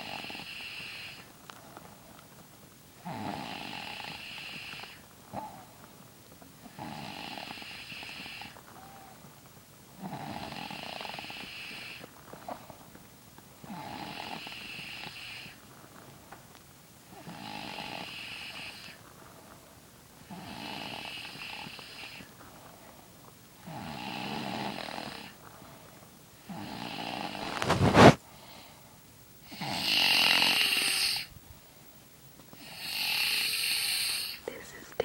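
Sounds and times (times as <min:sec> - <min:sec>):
girl snoring heavily: 0:00.0 - 0:01.2, 0:03.0 - 0:05.7, 0:06.7 - 0:08.6, 0:10.0 - 0:12.0, 0:13.6 - 0:15.6, 0:17.1 - 0:19.0, 0:20.3 - 0:22.3, 0:23.6 - 0:25.4, 0:26.4 - 0:28.2, 0:29.5 - 0:31.3, 0:32.6 - 0:34.6.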